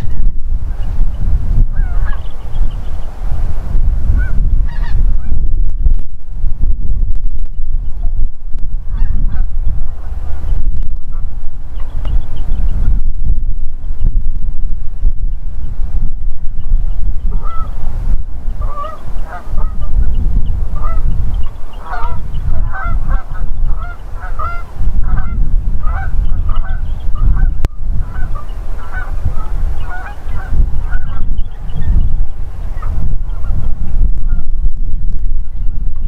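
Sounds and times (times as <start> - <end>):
wind rumble on microphone: 0.0 - 36.0
geese honking: 1.7 - 3.1, 4.2 - 5.4, 8.8 - 12.0, 17.3 - 17.8, 18.5 - 32.0, 32.6 - 34.5.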